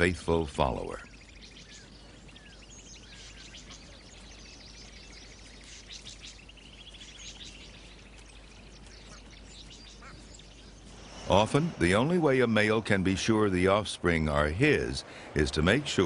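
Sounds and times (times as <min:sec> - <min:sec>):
birds chirping and calling: 0:00.0 - 0:16.0.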